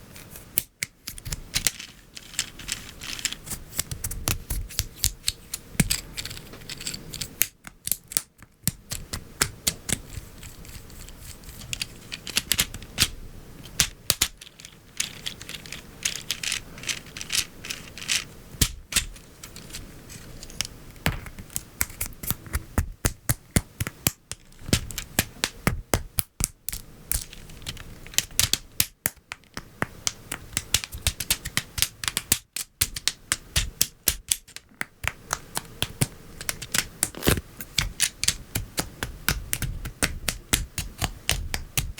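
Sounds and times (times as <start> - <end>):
plastic parts snapping together: 13.7 - 19.8.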